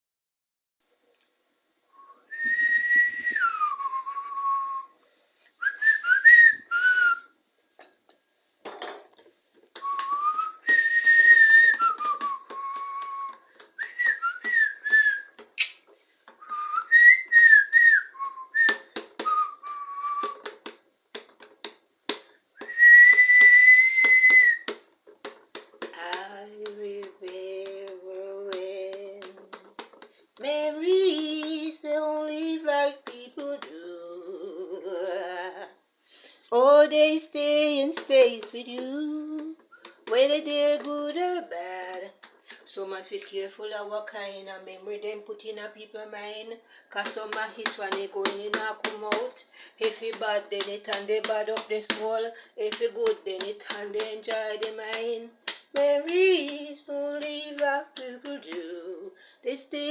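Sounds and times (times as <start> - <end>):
person whistling a tune: 2.0 - 4.9, 5.6 - 7.3, 9.8 - 15.4, 16.4 - 20.4, 22.6 - 24.7
tongue clicks and mouth pops: 9.8 - 16.8.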